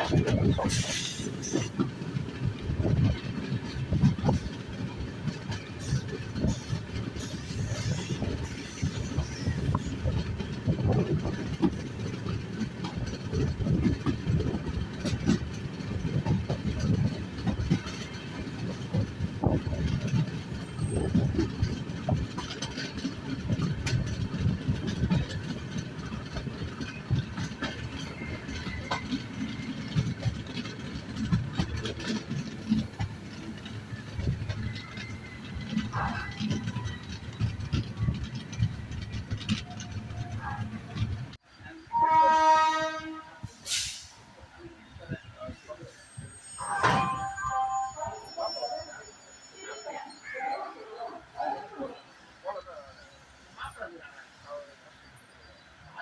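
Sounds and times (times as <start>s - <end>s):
clatter and knocks of track: 0.0s - 41.4s
train wheels rumbling on rail: 0.0s - 50.3s.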